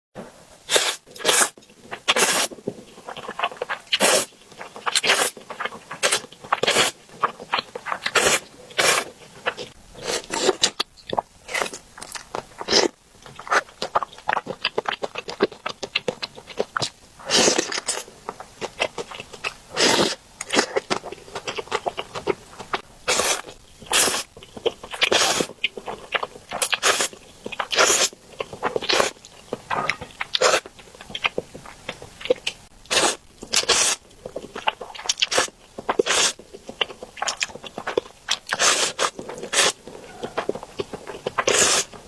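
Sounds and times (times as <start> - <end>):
noodle slurps: 0.7 - 2.5, 3.3 - 5.4, 6.0 - 9.1, 17.2 - 18.0, 19.7 - 20.7, 23.1 - 24.3, 25.0 - 25.6, 26.6 - 27.1, 27.7 - 28.1, 35.3 - 36.4, 38.5 - 39.8, 41.4 - 42.0
wet chewing clicks: 0.7 - 42.0.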